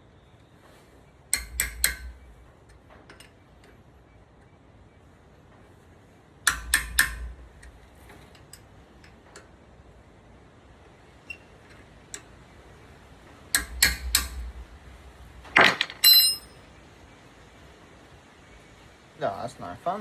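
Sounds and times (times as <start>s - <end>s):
hammer striking metal: 1.4s - 2.2s, 15.6s - 16.5s.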